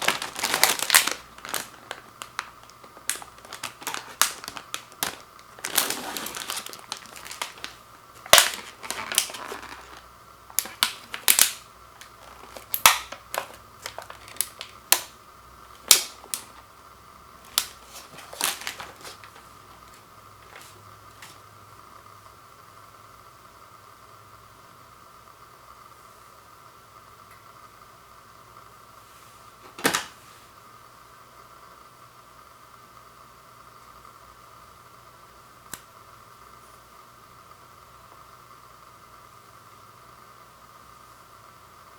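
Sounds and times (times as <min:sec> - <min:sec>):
stiff plastic clicks and snaps: 0:00.0 - 0:15.2, 0:15.8 - 0:16.7, 0:17.5 - 0:20.6
plastic crinkling: 0:00.0 - 0:16.7, 0:17.4 - 0:21.4.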